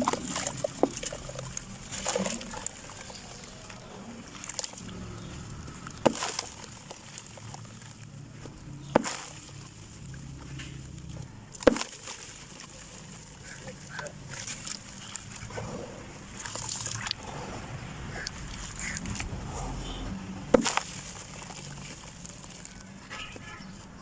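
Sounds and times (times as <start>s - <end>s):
cement lumps crumbling: 0.0s - 23.7s
sharp cracks: 20.4s - 23.4s.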